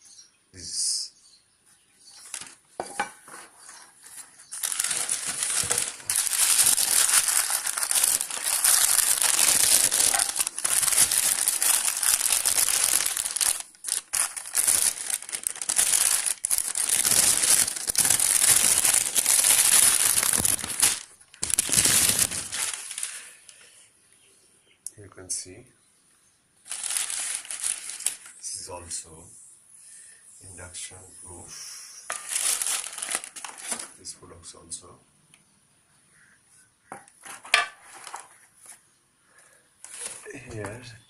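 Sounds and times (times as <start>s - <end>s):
packaging crumpling and crinkling: 2.2s - 2.6s, 3.3s - 23.5s, 26.7s - 28.5s, 32.1s - 34.0s, 37.2s - 38.8s, 39.8s - 40.9s.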